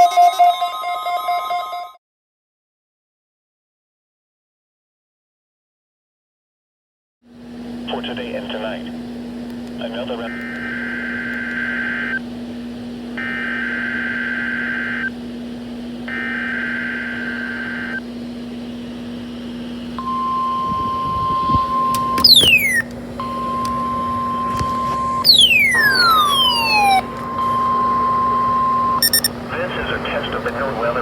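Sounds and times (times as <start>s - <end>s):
low steady hum: 7.4s - 31.0s
steady alarm tone: 10.3s - 12.2s, 13.2s - 15.1s, 16.1s - 18.0s, 20.0s - 31.0s
whistles sliding down in pitch: 21.8s - 22.8s
warbling digital data tones: 25.2s - 29.4s.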